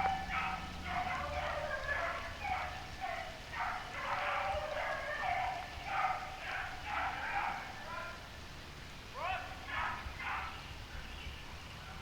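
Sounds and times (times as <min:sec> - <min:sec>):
hunting dogs baying: 0:00.0 - 0:08.2.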